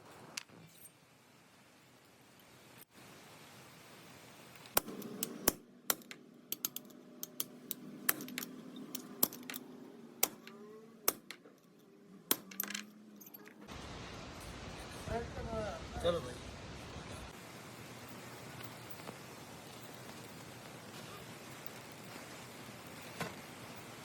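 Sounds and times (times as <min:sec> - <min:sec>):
metal tools clinking: 0:04.9 - 0:13.7.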